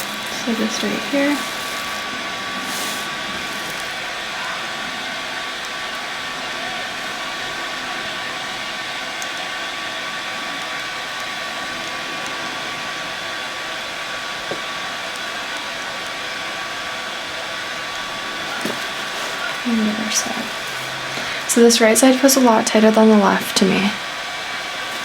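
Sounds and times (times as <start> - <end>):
small electric motor whining: 0.0 - 11.0, 17.4 - 21.8.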